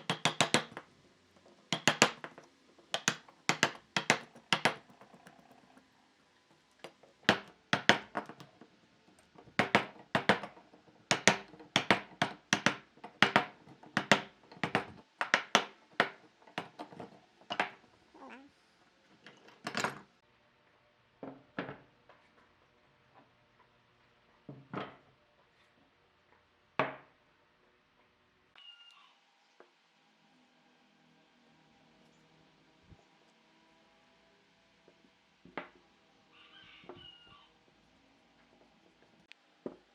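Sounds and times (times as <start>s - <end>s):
hard objects knocking together: 0.0s - 5.6s, 6.8s - 18.0s.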